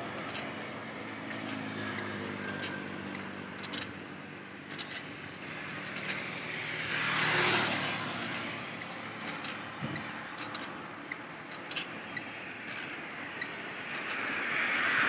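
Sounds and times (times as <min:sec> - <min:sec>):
steady traffic engine hum: 0:00.0 - 0:15.0
vehicle passing close by: 0:05.4 - 0:10.8, 0:13.4 - 0:15.0.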